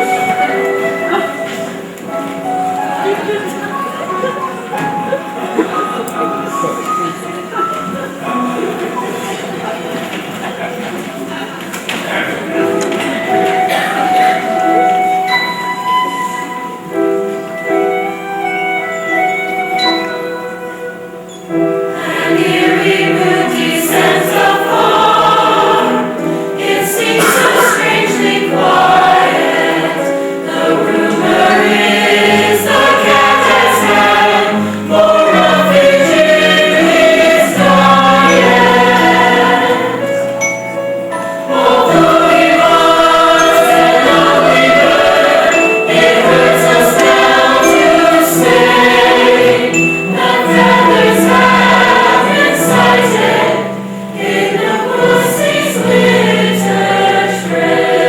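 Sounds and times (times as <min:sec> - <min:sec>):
instrumental accompaniment: 0:00.0 - 0:58.0
choir singing a slow song: 0:12.0 - 0:20.1, 0:21.0 - 0:40.4, 0:41.2 - 0:58.0.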